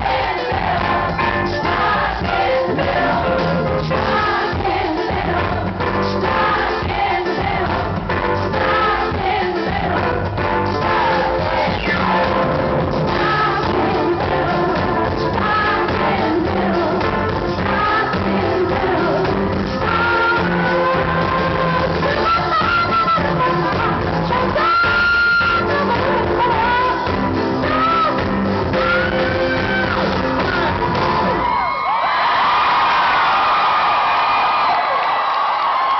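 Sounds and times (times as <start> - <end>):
live pop-rock band playing: 0.0 - 31.8
lead singer singing: 13.1 - 31.0.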